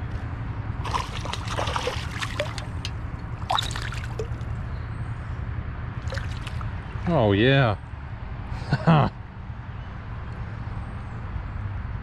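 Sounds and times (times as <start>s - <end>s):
rushing river water: 0.8s - 4.5s, 6.0s - 6.8s
small water splashes: 0.8s - 4.6s, 6.0s - 7.0s
water trickling and splashing: 0.8s - 4.6s, 6.0s - 7.0s.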